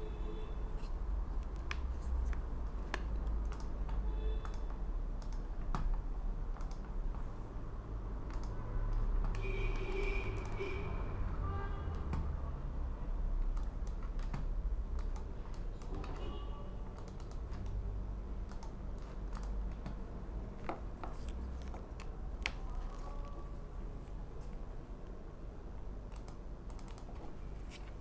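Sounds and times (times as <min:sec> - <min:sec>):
computer keyboard typing: 0:01.5 - 0:07.3, 0:08.2 - 0:10.7, 0:13.4 - 0:23.6, 0:26.0 - 0:28.0.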